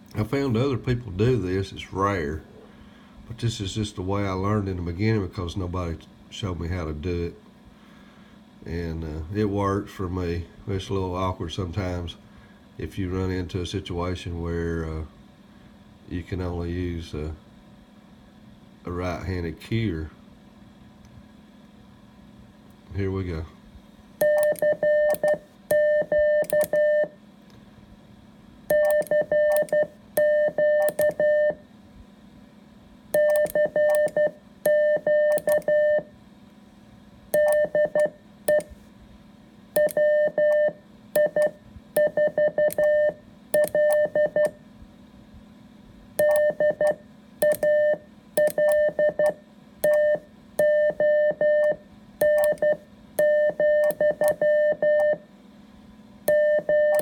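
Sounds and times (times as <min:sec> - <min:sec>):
morse code beeps: 0:24.2 - 0:27.2, 0:28.7 - 0:31.6, 0:33.2 - 0:36.1, 0:37.4 - 0:38.7, 0:39.8 - 0:44.6, 0:46.2 - 0:55.2, 0:56.3 - 0:57.0.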